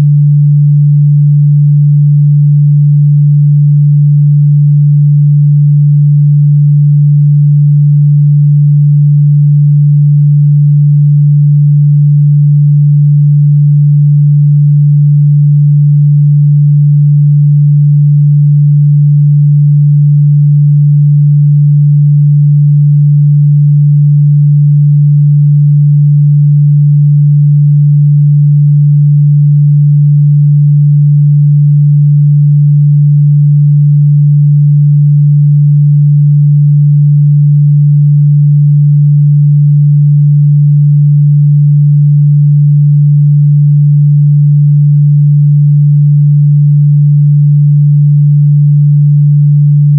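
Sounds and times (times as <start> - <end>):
low sine-wave test tone: 0.0 - 49.9.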